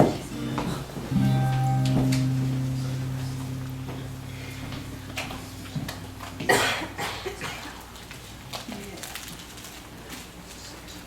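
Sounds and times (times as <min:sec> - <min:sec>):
acoustic guitar chord ringing: 0:00.4 - 0:08.2
person coughing: 0:06.5 - 0:07.6.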